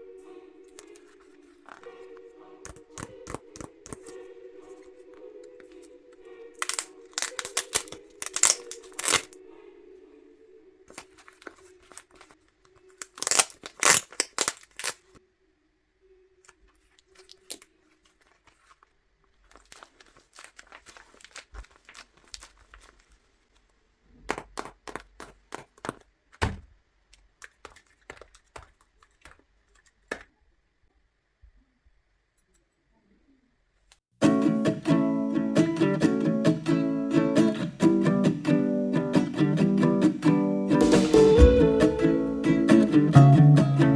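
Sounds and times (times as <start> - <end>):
paper tearing and crinkling: 6.6 - 9.4, 10.9 - 15.2, 17.0 - 23.2.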